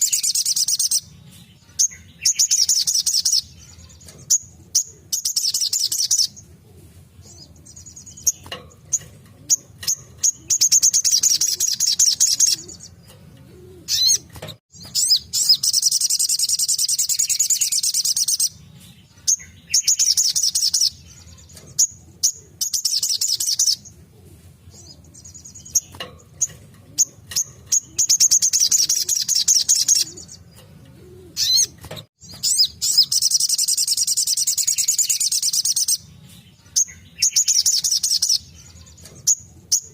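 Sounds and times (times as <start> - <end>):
bird singing trilled bursts: 0.0 - 6.5, 7.2 - 24.0, 24.7 - 39.9
bird chirps: 0.0 - 39.9.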